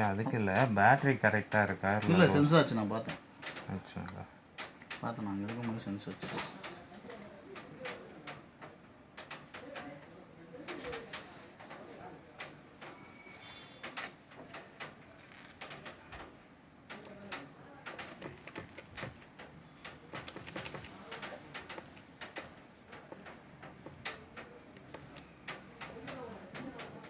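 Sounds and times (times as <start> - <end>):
alarm keypad beeps: 18.1 - 19.3, 20.2 - 21.0, 21.8 - 24.2, 25.0 - 25.2, 25.9 - 26.2.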